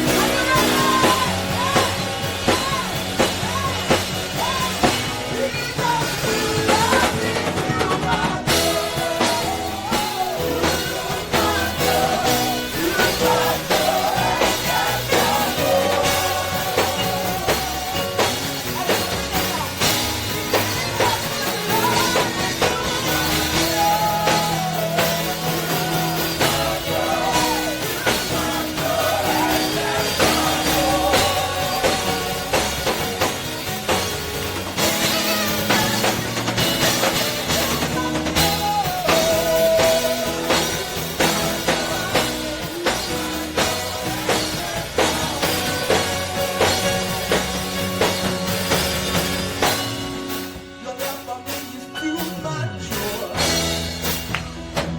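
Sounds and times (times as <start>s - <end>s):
gospel band playing: 0.0s - 54.9s
people singing: 0.0s - 54.9s.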